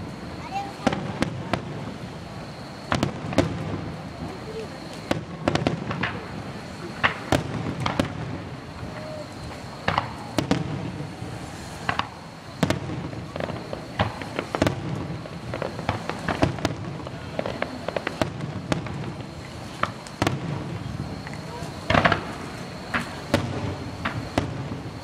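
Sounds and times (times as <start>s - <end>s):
fireworks bursting: 0.0s - 25.0s
faint steady high tone: 8.7s - 10.3s.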